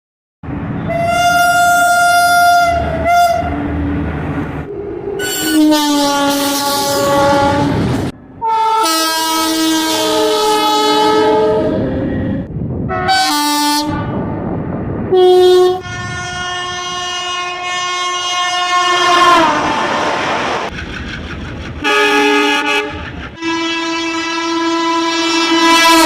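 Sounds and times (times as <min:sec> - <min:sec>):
train rumbling: 0:00.4 - 0:26.0
locomotive horn blasts: 0:00.8 - 0:03.6, 0:05.2 - 0:12.1, 0:12.9 - 0:14.2, 0:15.1 - 0:19.8, 0:21.8 - 0:26.0.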